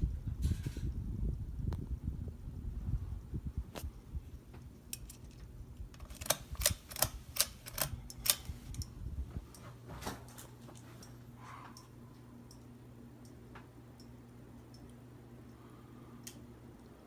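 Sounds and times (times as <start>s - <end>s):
ceiling fan motor hum: 0.0s - 17.0s
sharp clicks: 6.0s - 8.9s.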